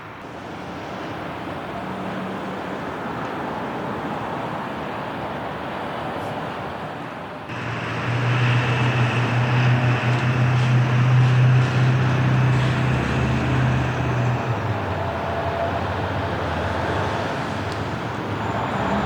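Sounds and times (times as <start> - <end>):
ferry engines droning: 6.3 - 19.0.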